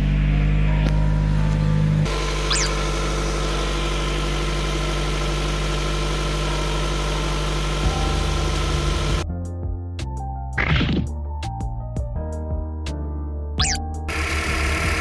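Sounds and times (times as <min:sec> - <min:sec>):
car engine idling: 0:00.0 - 0:09.2, 0:13.6 - 0:15.0.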